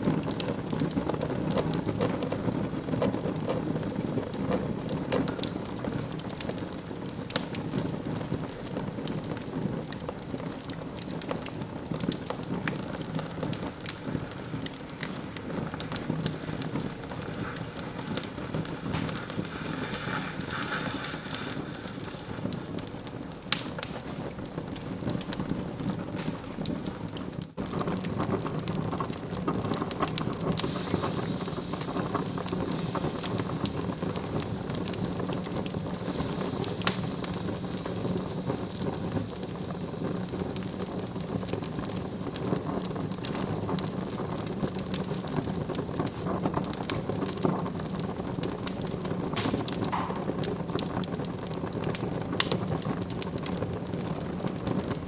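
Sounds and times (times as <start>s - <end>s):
fire popping sharply: 0.0s - 55.0s
soft hiss from fire: 0.0s - 55.0s
wood fire crackling: 0.0s - 55.0s.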